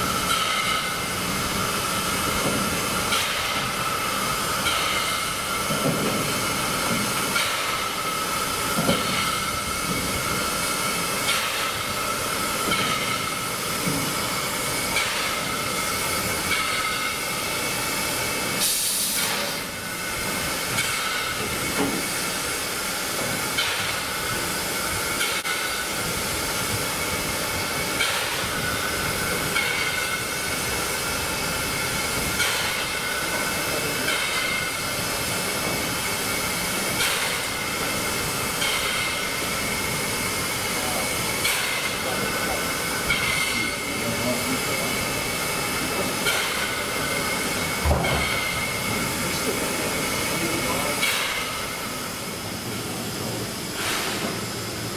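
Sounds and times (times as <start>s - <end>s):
steam locomotive hissing: 0.0s - 54.9s
burst of escaping steam: 18.6s - 22.7s.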